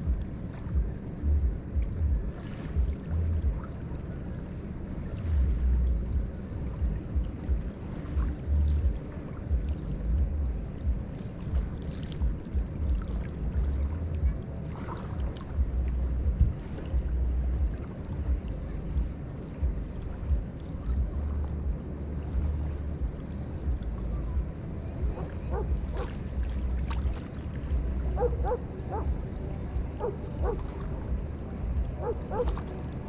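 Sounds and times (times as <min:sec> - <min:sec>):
river water lapping at shore: 0:00.0 - 0:33.0
wind buffeting microphone: 0:00.0 - 0:33.0
animal calls: 0:32.0 - 0:32.5.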